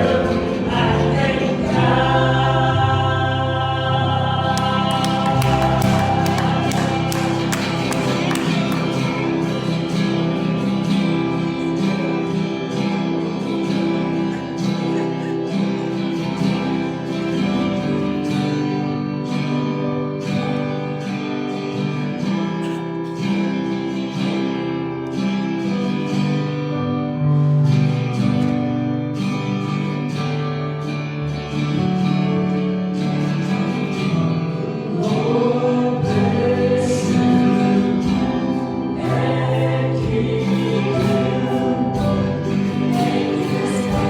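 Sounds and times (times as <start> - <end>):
acoustic guitar strumming: 0.0 - 44.0.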